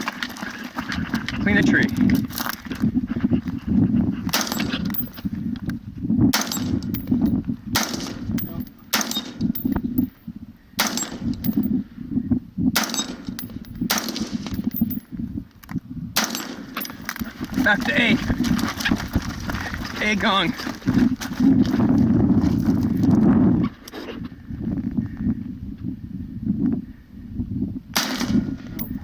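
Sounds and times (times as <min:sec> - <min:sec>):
gunshots: 0:28.0 - 0:28.6.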